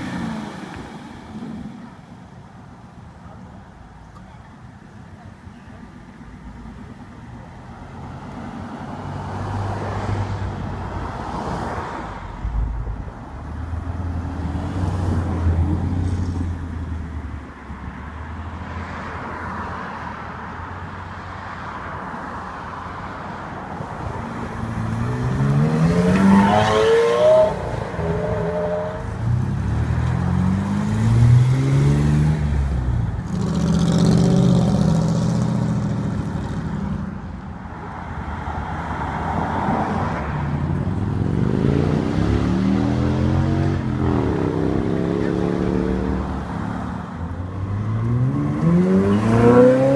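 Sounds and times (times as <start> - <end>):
car engines revving hard: 24.1 - 37.2, 39.1 - 49.9.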